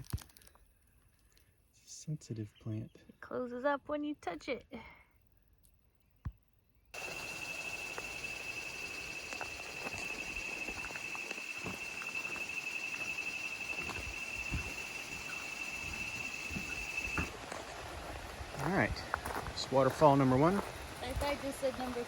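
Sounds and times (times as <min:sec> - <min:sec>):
high insect drone: 0:07.0 - 0:18.9.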